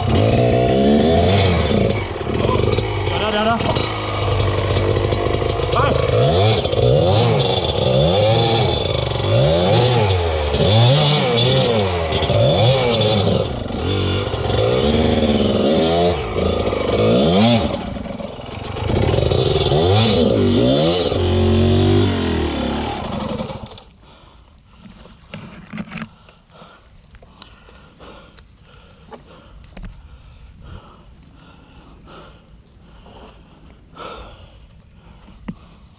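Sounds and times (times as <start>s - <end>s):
dirt bike engine revving: 0.0s - 23.9s.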